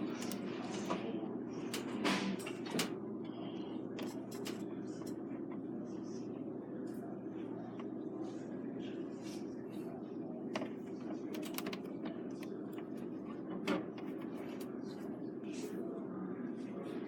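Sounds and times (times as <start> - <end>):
steady low hum: 0.0 - 17.0
clicks and knocks of handling: 4.0 - 5.7, 10.5 - 15.0.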